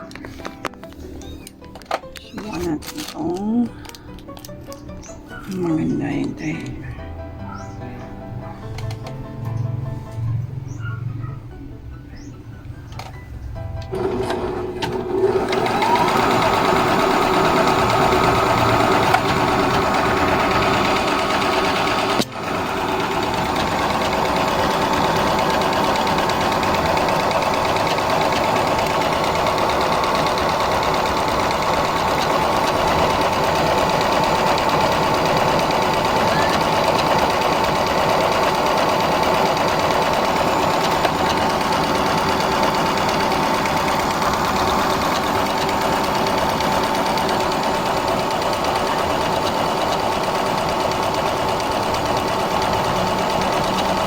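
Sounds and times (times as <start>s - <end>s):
sewing machine stitching: 13.8s - 54.0s.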